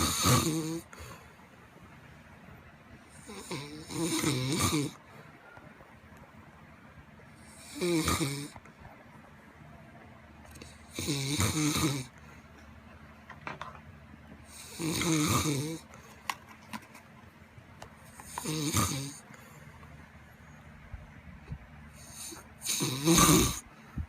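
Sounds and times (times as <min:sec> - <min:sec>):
person snoring heavily: 0:00.0 - 0:01.0, 0:03.2 - 0:05.1, 0:07.4 - 0:08.6, 0:10.6 - 0:12.2, 0:14.5 - 0:15.9, 0:18.2 - 0:19.2, 0:21.9 - 0:23.7.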